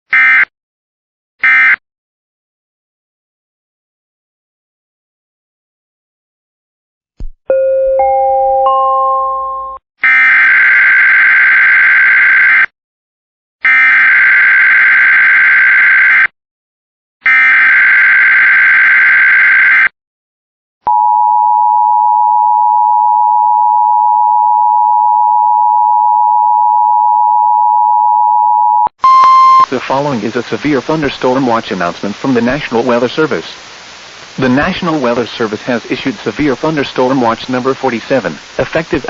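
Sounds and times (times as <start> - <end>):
two-tone attention signal: 20.9 - 29.7.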